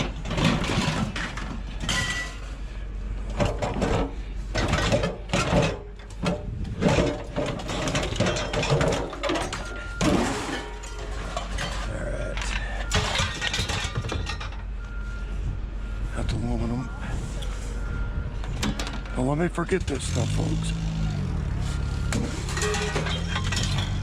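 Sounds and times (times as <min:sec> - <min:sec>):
scrap metal clanking: 0:00.0 - 0:02.6, 0:03.3 - 0:14.6, 0:21.6 - 0:24.0.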